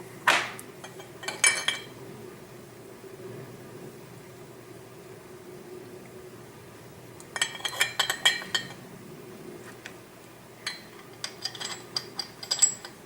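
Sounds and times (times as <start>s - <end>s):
metal parts clinking: 0.8s - 1.9s, 7.4s - 8.8s, 10.6s - 13.0s.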